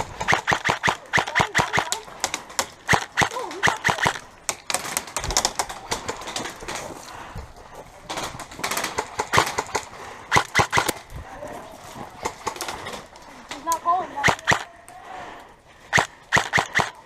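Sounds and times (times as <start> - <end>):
airsoft guns firing bursts: 0.0 - 6.8, 8.2 - 11.1, 14.2 - 14.7, 15.9 - 17.0.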